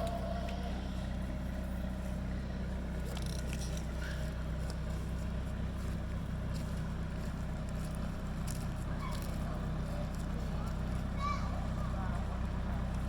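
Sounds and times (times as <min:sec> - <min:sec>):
engine droning: 0:00.0 - 0:03.7.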